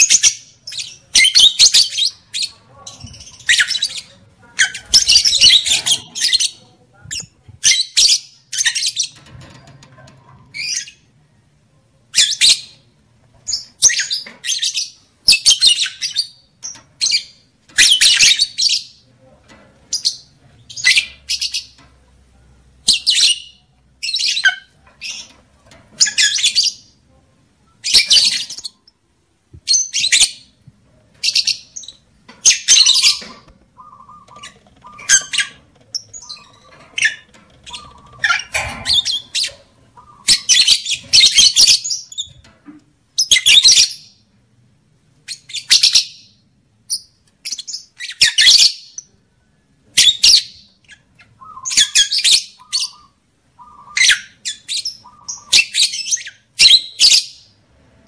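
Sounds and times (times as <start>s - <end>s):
lovebirds squawking: 32.4s - 42.0s, 51.2s - 57.4s.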